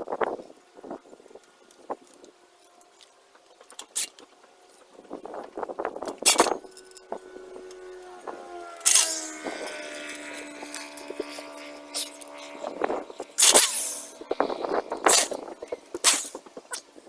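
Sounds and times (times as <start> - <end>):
drill driving screws into wood: 8.8 - 11.3, 13.4 - 14.2, 15.0 - 16.4.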